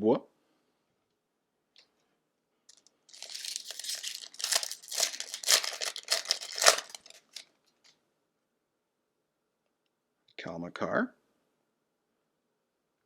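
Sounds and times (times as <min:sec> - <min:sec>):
wrapper crinkling and tearing: 0:03.1 - 0:07.5.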